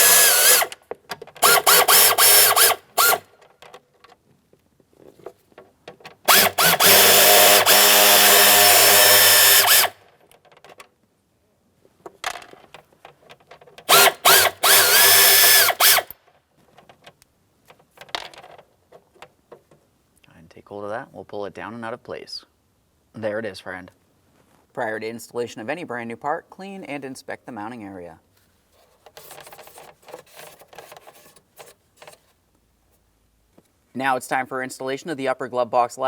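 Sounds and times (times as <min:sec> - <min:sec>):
power drill whirring: 0:00.0 - 0:00.8, 0:01.4 - 0:03.3, 0:06.3 - 0:10.0, 0:13.9 - 0:16.1.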